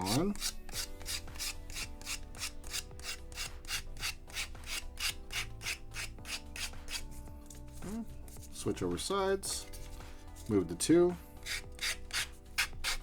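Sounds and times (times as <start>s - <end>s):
sandpaper rubbing on plastic: 0.0s - 8.6s, 11.4s - 13.0s.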